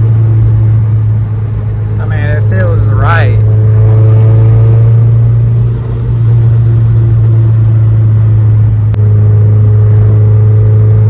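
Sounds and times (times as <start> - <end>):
car engine drone from cabin: 0.0 - 11.0.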